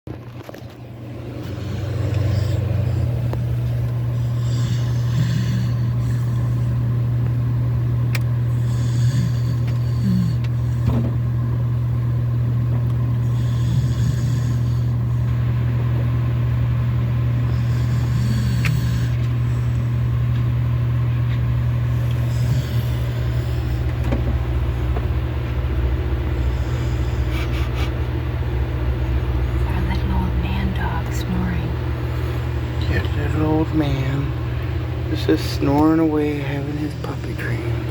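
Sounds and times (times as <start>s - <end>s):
low mechanical hum: 0.1s - 37.9s
dog snoring: 1.4s - 6.9s, 8.4s - 11.0s, 13.2s - 15.3s, 17.3s - 20.1s, 21.8s - 24.2s, 26.3s - 28.0s.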